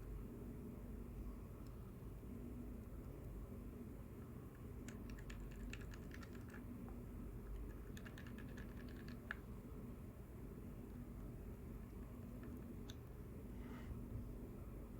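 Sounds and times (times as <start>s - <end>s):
soft keyboard typing: 4.6s - 6.7s, 7.4s - 9.5s.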